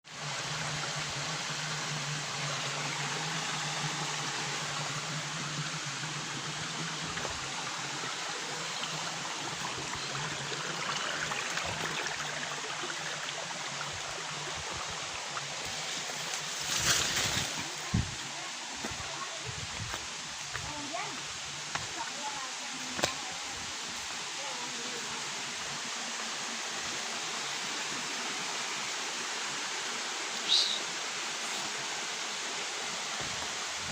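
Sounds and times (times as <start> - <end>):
waterfall rushing: 0.1 - 16.5.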